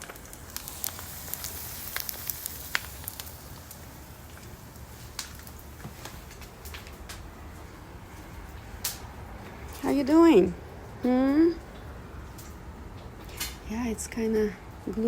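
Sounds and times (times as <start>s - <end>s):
egg sizzling in a pan: 0.0s - 6.7s
fat popping and crackling: 0.0s - 13.9s.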